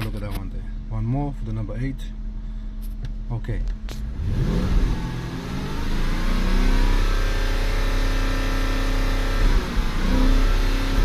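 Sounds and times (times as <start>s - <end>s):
car engine revving with misfire: 3.8s - 11.0s.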